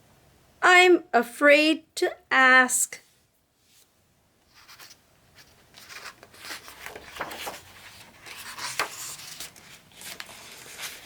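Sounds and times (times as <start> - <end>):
book pages rustling and turning: 3.6 - 11.0.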